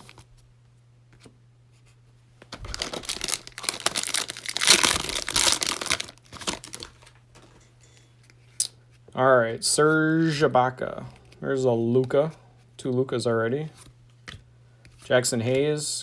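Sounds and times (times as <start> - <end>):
cellophane wrapper crinkling and tearing: 2.6 - 7.2.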